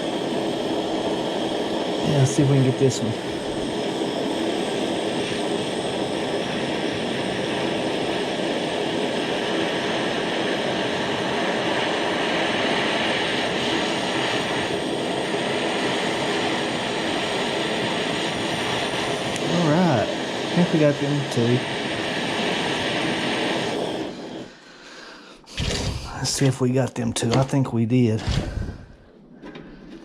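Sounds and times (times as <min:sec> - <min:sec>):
torch flame hissing: 0:00.0 - 0:27.5, 0:28.1 - 0:29.9.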